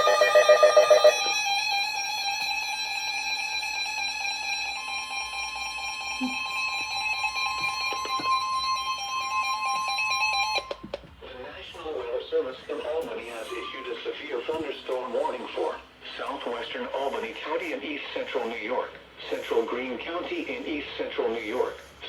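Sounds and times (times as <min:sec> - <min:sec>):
warbling header data bursts: 0:00.0 - 0:01.6.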